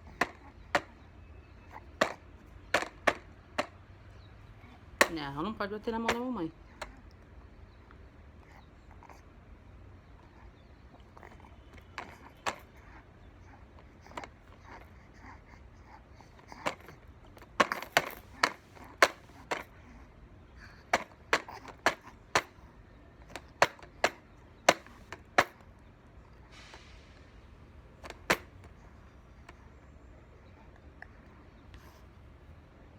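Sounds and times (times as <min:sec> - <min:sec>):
short soft hiss: 0:26.5 - 0:27.4.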